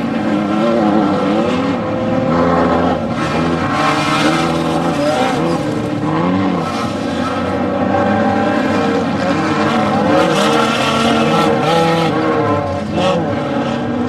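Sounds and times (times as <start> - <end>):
race vehicle engines revving: 0.0 - 14.0.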